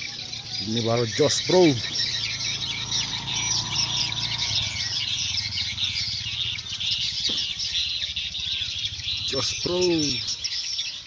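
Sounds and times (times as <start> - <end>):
swiftlets chirping: 0.0 - 11.0.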